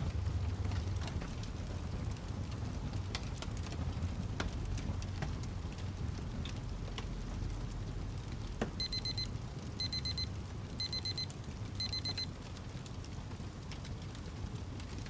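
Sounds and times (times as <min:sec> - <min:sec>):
electronic alarm beeping: 0:08.8 - 0:12.3
fire crackling: 0:11.4 - 0:15.0.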